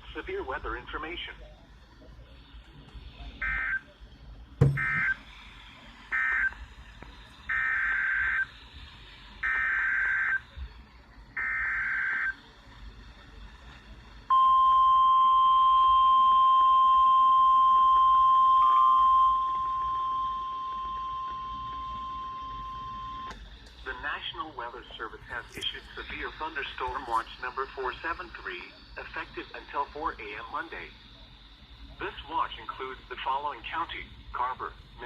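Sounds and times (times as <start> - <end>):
steady weather radio alert tone: 0.0 - 4.0, 4.8 - 5.3, 6.1 - 6.6, 7.5 - 8.6, 9.3 - 10.8, 14.3 - 35.0
digital data tone bursts: 14.3 - 23.3.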